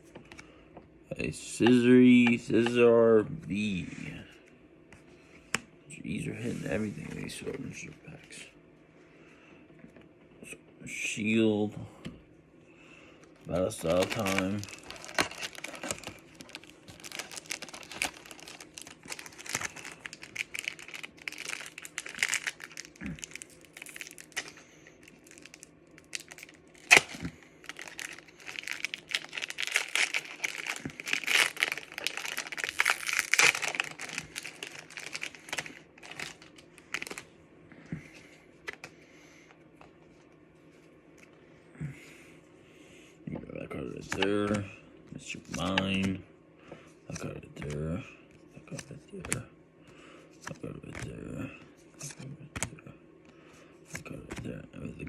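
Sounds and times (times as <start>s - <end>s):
foil wrapper crinkling and tearing: 13.4s - 37.3s.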